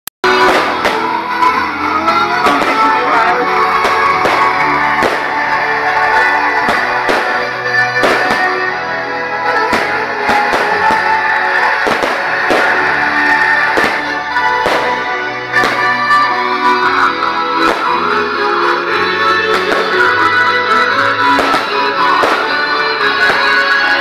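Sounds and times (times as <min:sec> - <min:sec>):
guitar music: 0:00.2 - 0:24.0
short sharp hits: 0:06.6 - 0:08.6.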